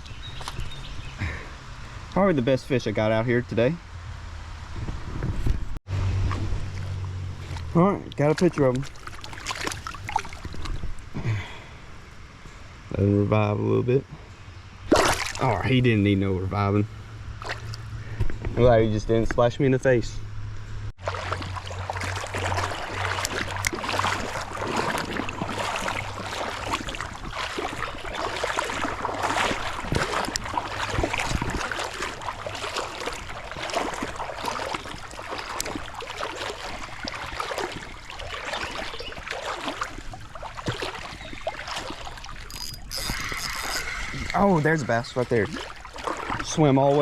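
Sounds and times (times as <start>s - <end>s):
creek water rushing: 5.9s - 10.8s, 21.0s - 47.0s.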